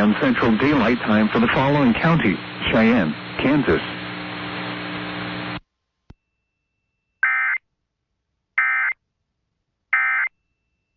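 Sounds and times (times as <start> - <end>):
radio hiss and hum: 0.0 - 5.6.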